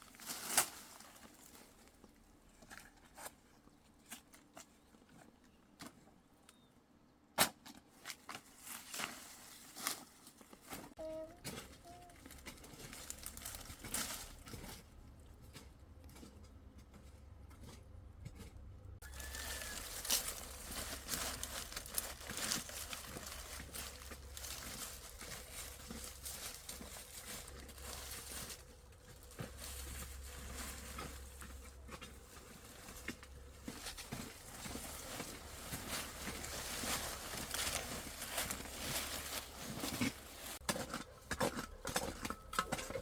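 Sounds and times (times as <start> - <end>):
dry leaves rustling and crackling: 0.0 - 2.0, 8.3 - 15.0, 19.0 - 40.7.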